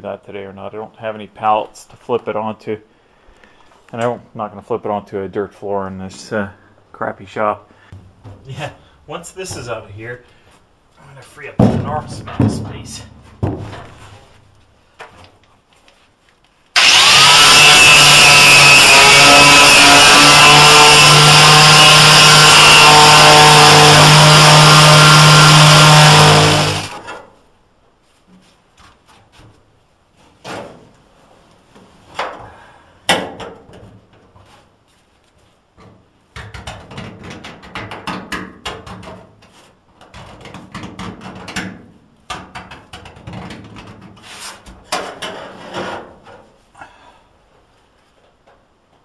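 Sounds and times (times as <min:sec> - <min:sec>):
power grinder whining: 0:16.8 - 0:27.2.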